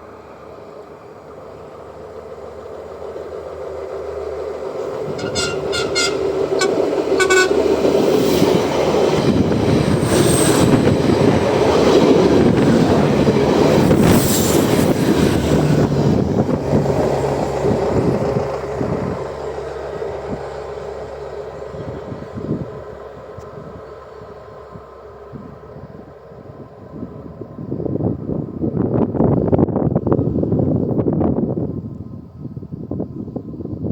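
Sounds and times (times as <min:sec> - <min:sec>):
train passing rumble: 0:00.0 - 0:33.9.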